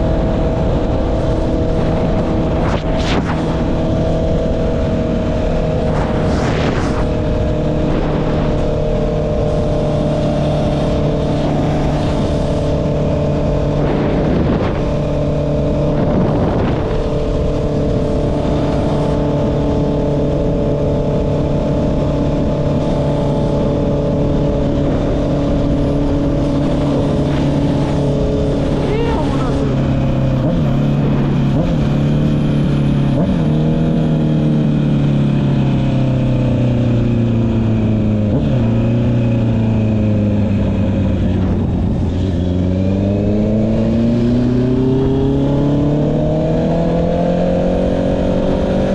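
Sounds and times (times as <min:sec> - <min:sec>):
motorcycle engine running: 0:00.0 - 0:48.9
brief whooshes: 0:02.5 - 0:03.6, 0:05.8 - 0:08.8.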